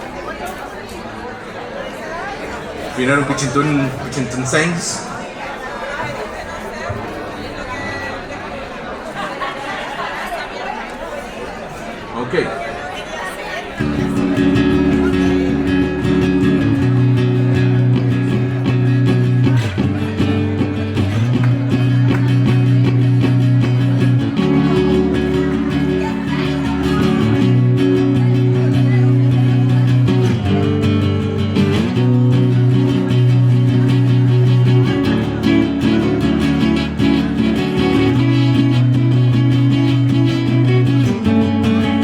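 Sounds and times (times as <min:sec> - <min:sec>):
strummed guitar chords: 0:13.8 - 0:42.0.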